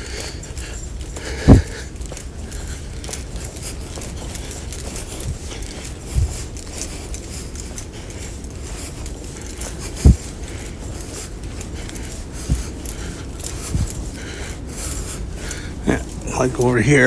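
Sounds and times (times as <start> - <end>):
rustling and jangling handling noise: 0.0 - 17.0
dull low thumps: 0.9 - 2.0, 8.5 - 14.2.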